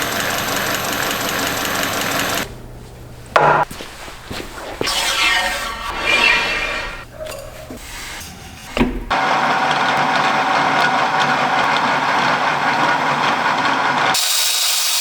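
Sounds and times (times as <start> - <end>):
power tool running: 0.0 - 2.7.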